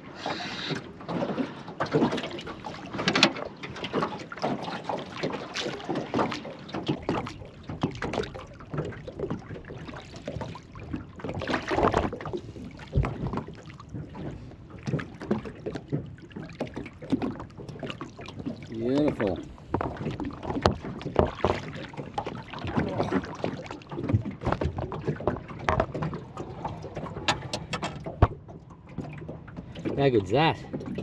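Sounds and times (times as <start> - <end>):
water splashing beside boat: 0.0 - 31.0
knocks and clatter on hull: 0.7 - 31.0.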